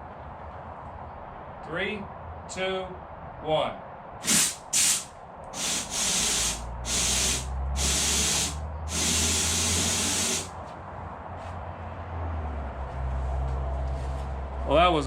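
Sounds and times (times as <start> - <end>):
aerosol can spraying: 4.2 - 10.5.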